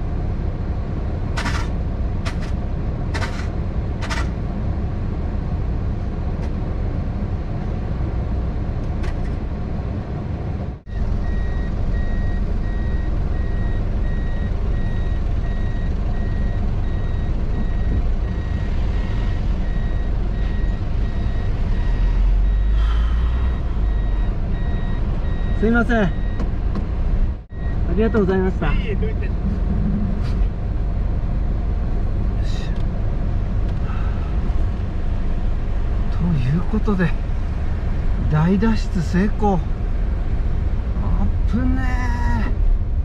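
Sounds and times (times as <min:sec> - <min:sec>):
engine rumbling: 0:00.0 - 0:43.0
reversing beeps: 0:10.9 - 0:26.5, 0:27.5 - 0:28.0.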